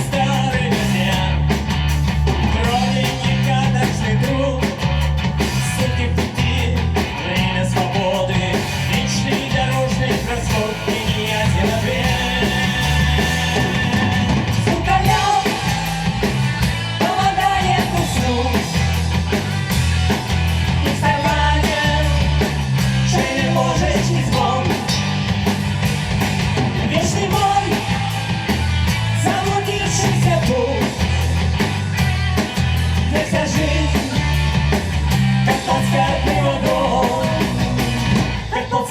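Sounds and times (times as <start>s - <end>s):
drum kit beat: 0.0s - 38.6s
bass guitar: 0.0s - 38.9s
electric guitars: 0.0s - 38.9s
person singing: 5.8s - 16.2s, 17.0s - 18.8s, 20.9s - 25.1s, 26.9s - 28.2s, 35.5s - 37.9s.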